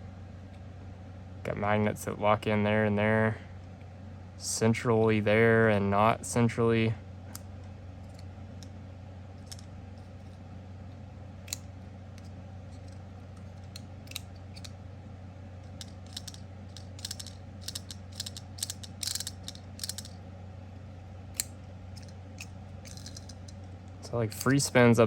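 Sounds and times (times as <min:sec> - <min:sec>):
magnetic fidget toy clicking: 0:15.7 - 0:20.2, 0:21.4 - 0:23.6.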